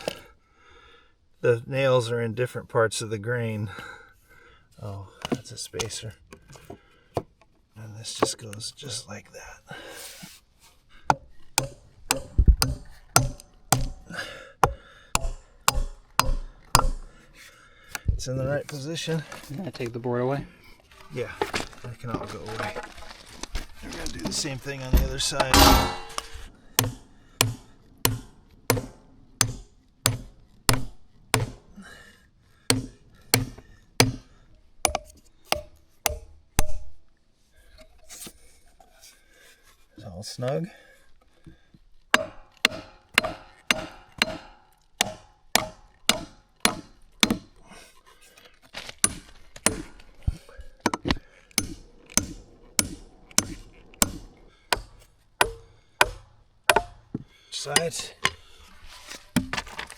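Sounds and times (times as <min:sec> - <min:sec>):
hammer striking wood: 0:11.1 - 0:17.2, 0:24.9 - 0:31.7, 0:32.7 - 0:34.3, 0:34.9 - 0:36.9, 0:42.2 - 0:47.5, 0:49.0 - 0:50.0, 0:50.9 - 0:57.2.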